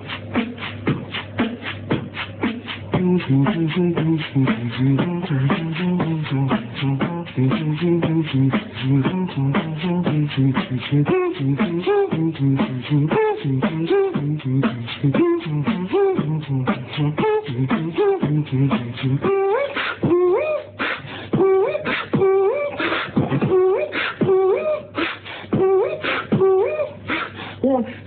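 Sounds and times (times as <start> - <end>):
person beatboxing: 0.0 - 28.0
pitched vocal notes: 0.0 - 28.0.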